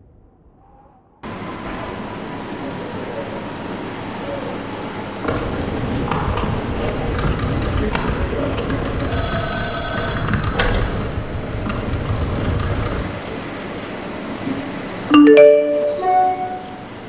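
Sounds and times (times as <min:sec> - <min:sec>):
bell-like chime: 0:15.1 - 0:16.9
music with ringing bell notes: 0:15.1 - 0:17.0.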